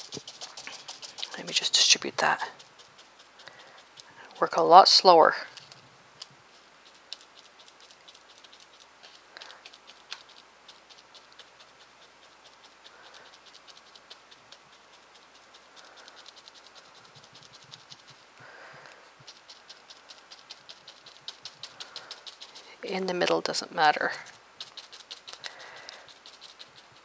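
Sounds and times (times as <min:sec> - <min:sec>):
brush strokes on paper: 0:00.0 - 0:27.0
stiff brush dabbing on paper: 0:00.0 - 0:27.0.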